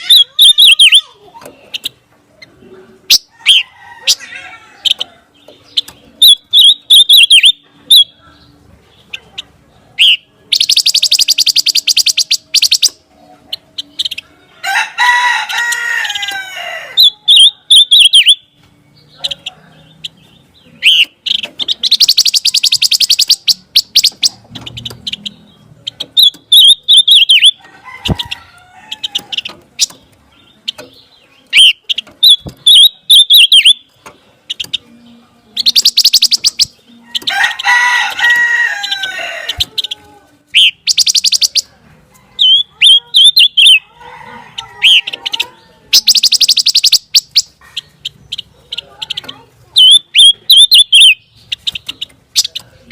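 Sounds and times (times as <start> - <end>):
songbird chirping and trilling: 0.0 - 52.9.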